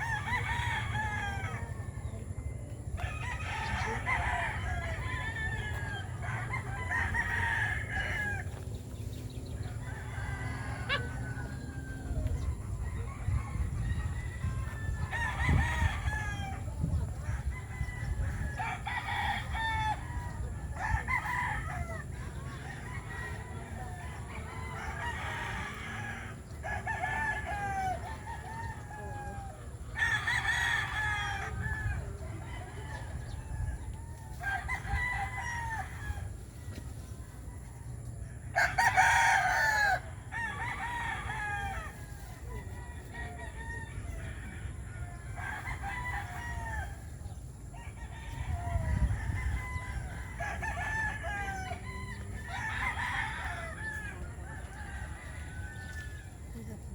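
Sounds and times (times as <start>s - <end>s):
roosters crowing: 0.0s - 56.9s
chickens clucking: 3.6s - 15.6s.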